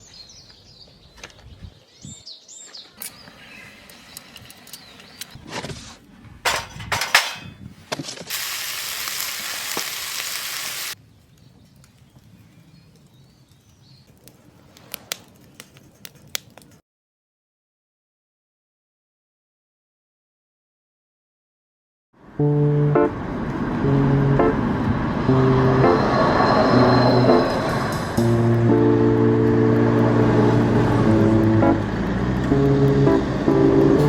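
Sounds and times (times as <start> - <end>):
dishes and cutlery clinking: 6.5 - 7.6
steady sizzling hiss: 8.3 - 11.0.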